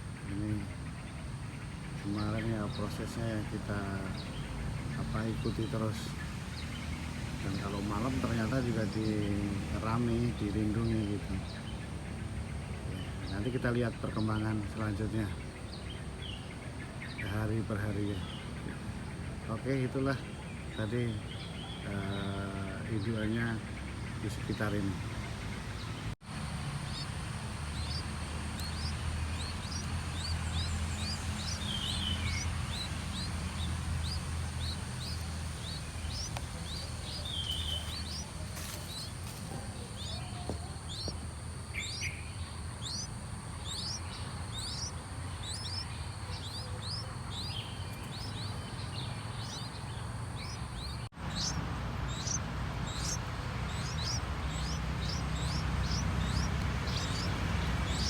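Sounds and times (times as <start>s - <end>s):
small birds chirping: 0.0s - 58.0s
low background rumble: 23.4s - 58.0s.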